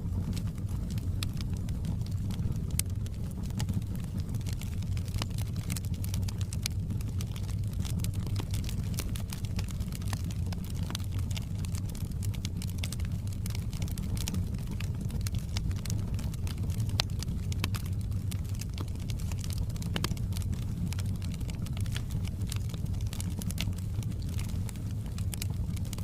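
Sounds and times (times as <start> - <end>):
fire crackling and popping: 0.0 - 26.0.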